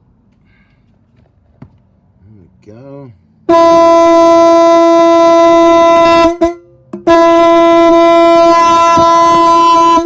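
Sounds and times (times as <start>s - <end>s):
ship's horn blast: 3.5s - 10.0s.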